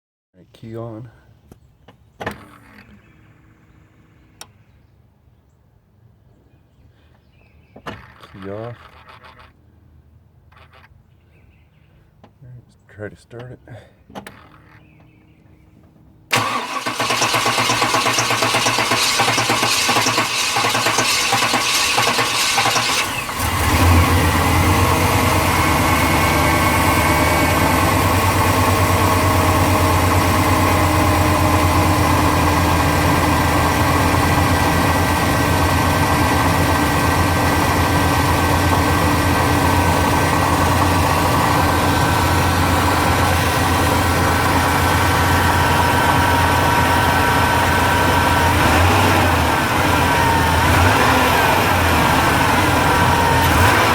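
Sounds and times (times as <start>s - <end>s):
car engine cranking on starter: 16.3s - 53.9s
car engine idling: 16.3s - 53.9s.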